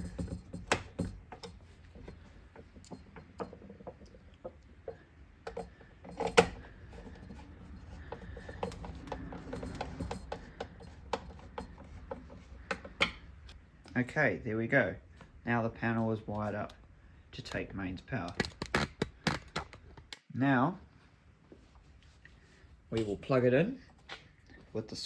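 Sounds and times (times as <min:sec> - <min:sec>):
screwdriver clicking and scraping screws: 0:05.5 - 0:13.6.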